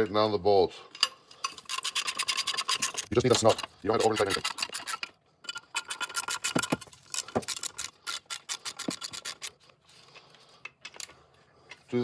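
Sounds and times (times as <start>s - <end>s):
wrench clicking: 1.0s - 9.5s.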